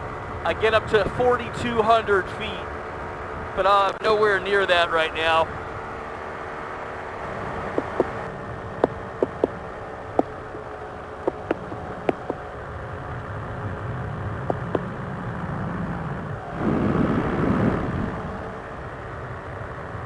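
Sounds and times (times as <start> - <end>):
two-stroke engine droning: 0.0 - 20.0
wind noise: 13.8 - 18.8
loud rushing air: 16.4 - 18.5.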